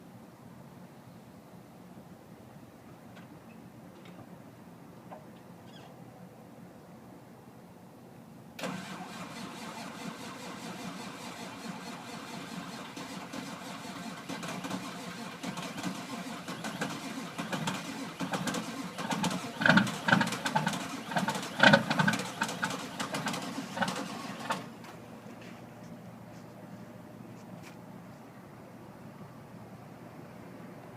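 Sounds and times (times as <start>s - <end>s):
diesel engine cranking and firing: 8.6s - 25.0s.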